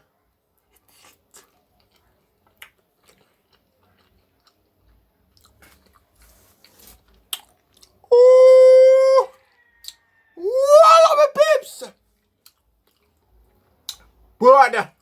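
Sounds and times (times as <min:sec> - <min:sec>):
person chewing food: 0:00.5 - 0:08.1, 0:09.2 - 0:10.4, 0:12.0 - 0:14.4.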